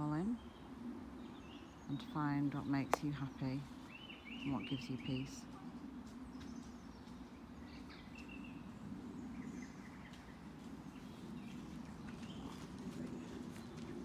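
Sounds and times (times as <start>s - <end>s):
songbirds chirping: 0.0s - 14.0s.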